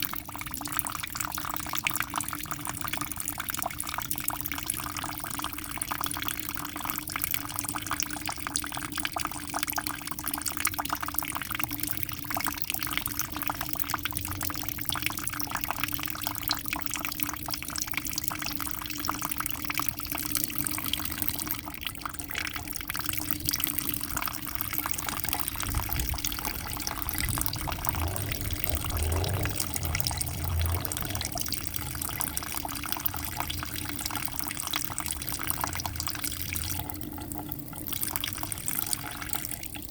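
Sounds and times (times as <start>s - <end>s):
aquarium water bubbling: 23.0s - 38.0s
low rumble: 23.5s - 37.0s.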